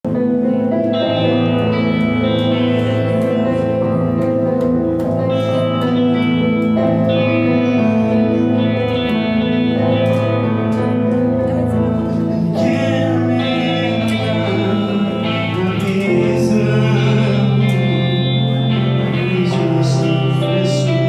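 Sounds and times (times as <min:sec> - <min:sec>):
guitar chords with reverb: 0:00.0 - 0:21.0.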